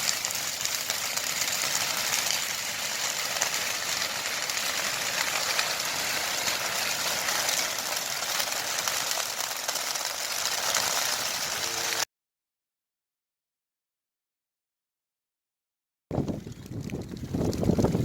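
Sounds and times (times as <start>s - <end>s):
grass fire crackling: 0.0s - 12.1s, 16.1s - 18.0s.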